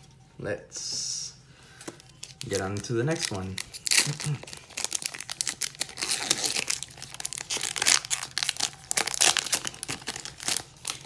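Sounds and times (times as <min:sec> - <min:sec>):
foil wrapper crinkling and tearing: 0:02.1 - 0:11.0.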